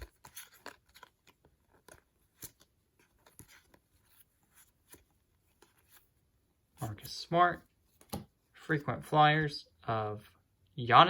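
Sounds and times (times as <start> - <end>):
trading cards being flipped: 0.0 - 6.2.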